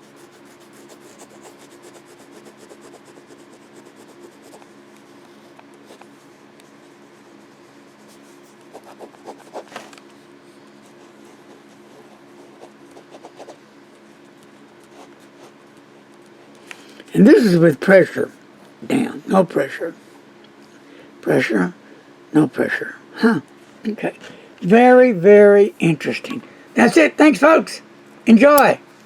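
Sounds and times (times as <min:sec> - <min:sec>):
ballpoint pen writing on paper: 0:00.0 - 0:04.8, 0:06.7 - 0:09.7, 0:10.8 - 0:13.6
steady low hum: 0:00.0 - 0:29.0.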